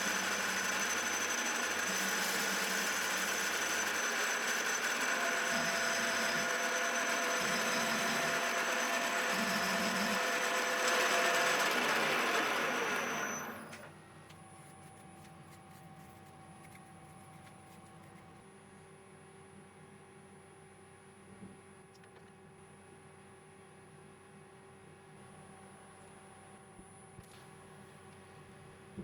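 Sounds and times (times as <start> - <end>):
milling machine hum and whine: 0.0 - 21.7.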